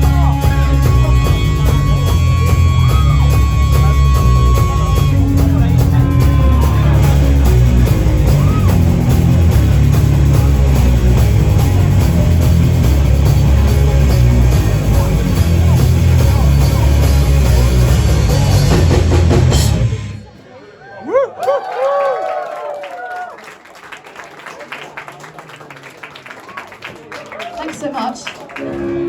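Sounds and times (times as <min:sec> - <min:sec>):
live rock band playing: 0:00.0 - 0:20.4, 0:28.6 - 0:29.0.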